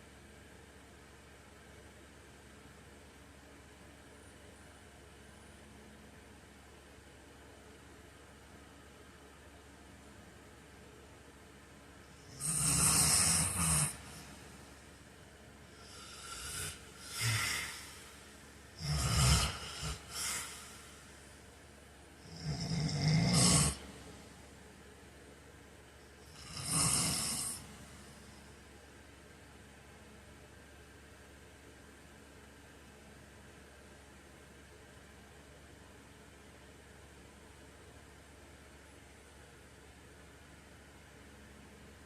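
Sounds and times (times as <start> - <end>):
man snoring: 12.2 - 14.4, 15.7 - 18.2, 18.8 - 21.0, 22.2 - 24.0, 26.3 - 27.8.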